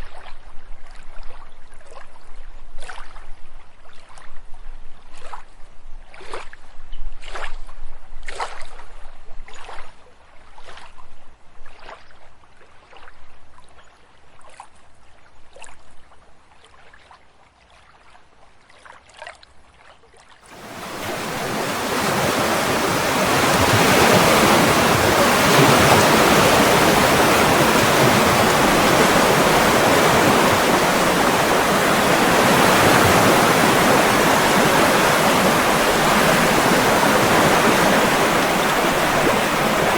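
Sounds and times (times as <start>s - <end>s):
rhythmic water splashing: 20.5s - 39.9s
rush of flowing water: 20.5s - 39.9s.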